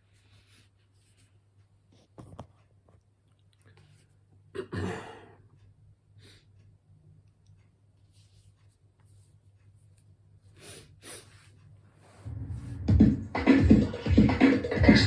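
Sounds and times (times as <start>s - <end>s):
low steady hum: 11.3s - 13.9s.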